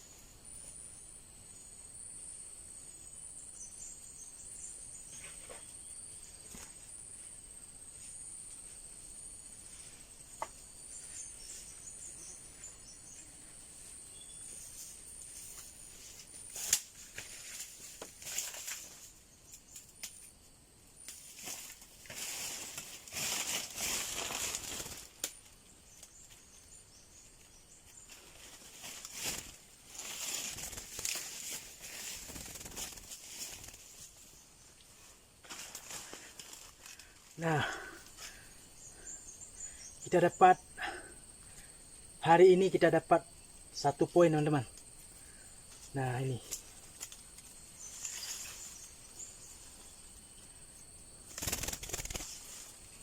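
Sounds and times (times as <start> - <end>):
high-pitched insect drone: 0.0 - 53.0
rustling and flapping: 14.5 - 19.1, 21.2 - 25.3, 28.0 - 34.3, 51.2 - 53.0.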